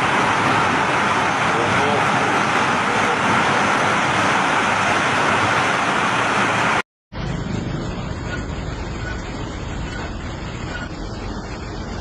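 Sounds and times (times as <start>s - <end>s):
dull low rushing noise: 0.0s - 12.0s
heavy rain pouring: 0.0s - 12.0s.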